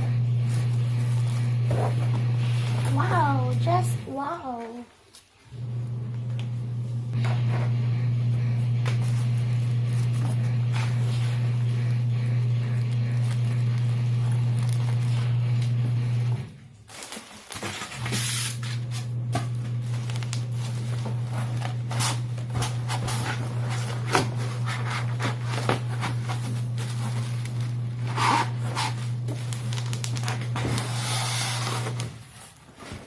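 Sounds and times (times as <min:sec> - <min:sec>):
packaging rustling and scraping: 0:00.4 - 0:03.5, 0:08.9 - 0:11.8, 0:12.7 - 0:15.6, 0:16.6 - 0:33.0
steady low hum: 0:05.5 - 0:16.6.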